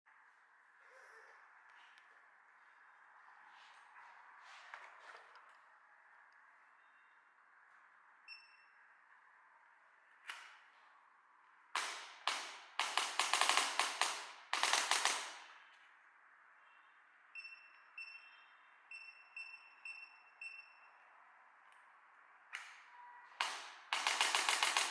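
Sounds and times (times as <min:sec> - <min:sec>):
short keypad beeps: 0:17.4 - 0:21.0.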